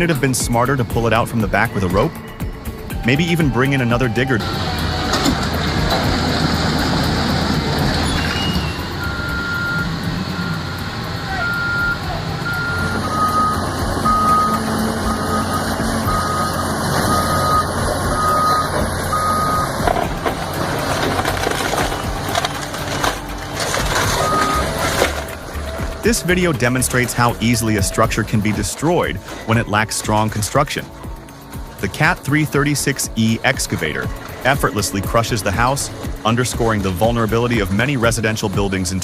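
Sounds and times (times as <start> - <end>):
heavy machine engine running: 0.0 - 39.0
backup alarm beeping: 7.9 - 20.2, 24.0 - 30.0.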